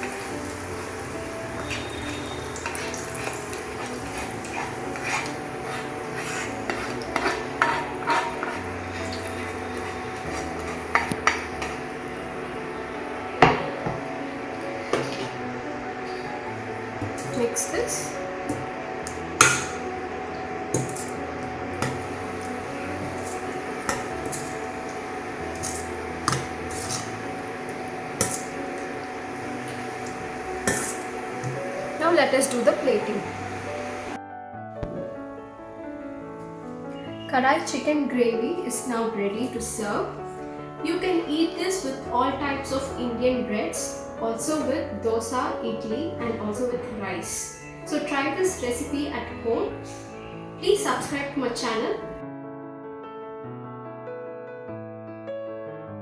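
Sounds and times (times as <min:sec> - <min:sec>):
utensil scraping a pan: 0:00.0 - 0:12.4, 0:13.4 - 0:34.2.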